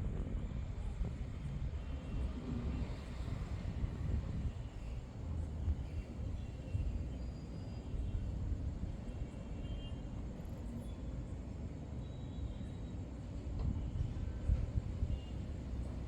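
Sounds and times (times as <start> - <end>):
wind buffeting microphone: 0.0 - 7.0.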